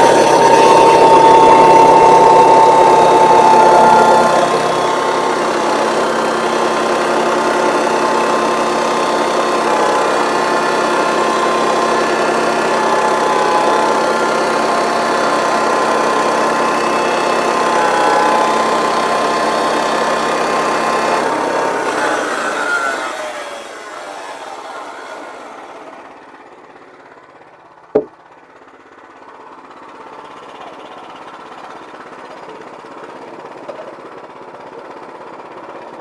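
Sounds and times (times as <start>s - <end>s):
sawmill engine humming: 0.0s - 35.6s.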